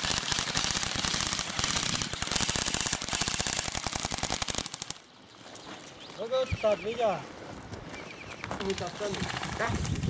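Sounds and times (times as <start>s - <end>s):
airsoft guns firing full auto: 0.0s - 5.0s.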